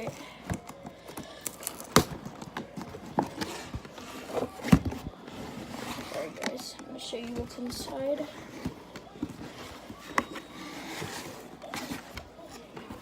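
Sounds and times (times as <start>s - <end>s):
cardboard package being opened: 1.1s - 3.7s.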